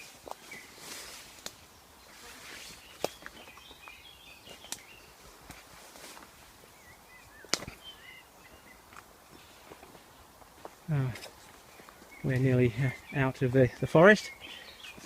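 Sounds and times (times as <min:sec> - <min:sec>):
footsteps through undergrowth: 0:00.0 - 0:15.0
small birds chirping faintly: 0:00.0 - 0:15.0
twigs snapping underfoot: 0:00.1 - 0:01.7, 0:02.9 - 0:06.3, 0:07.4 - 0:07.9.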